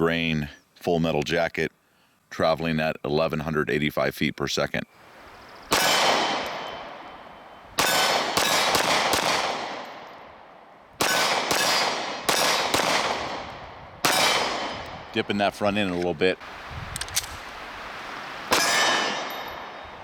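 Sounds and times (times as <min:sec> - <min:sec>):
pistol shots echoing: 0:05.7 - 0:15.3, 0:18.5 - 0:19.9.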